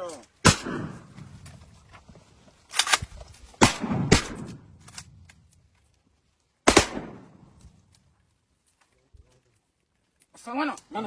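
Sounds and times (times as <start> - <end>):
gunshots echoing: 0.4 - 1.4, 3.6 - 5.2, 6.6 - 7.6.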